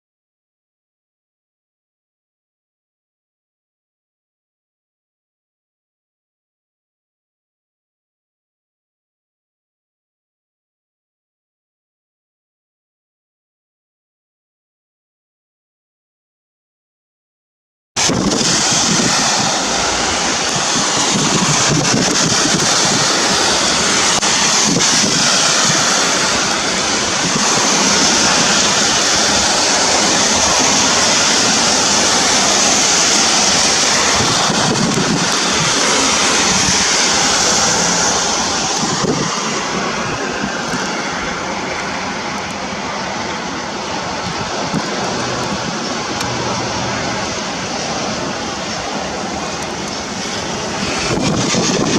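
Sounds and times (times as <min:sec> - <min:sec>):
heavy rain hissing: 0:18.0 - 0:51.9
wind buffeting microphone: 0:18.0 - 0:51.9.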